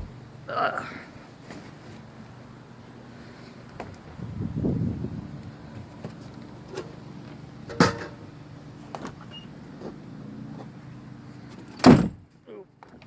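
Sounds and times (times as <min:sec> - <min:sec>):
steady low hum: 0:00.0 - 0:01.4.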